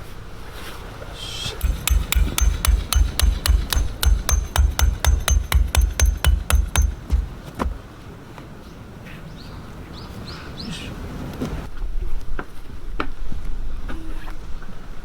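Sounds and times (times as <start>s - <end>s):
hammer striking metal: 1.6s - 7.8s.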